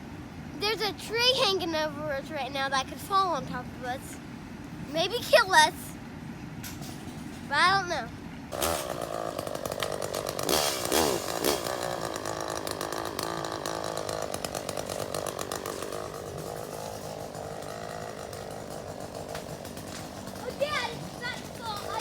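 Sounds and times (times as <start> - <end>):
chainsaw revving and cutting: 8.5 - 22.0.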